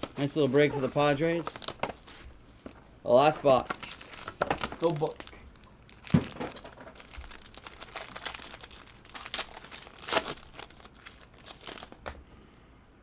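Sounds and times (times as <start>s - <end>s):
plastic wrapping crinkling and tearing: 0.0s - 2.4s, 3.5s - 12.2s.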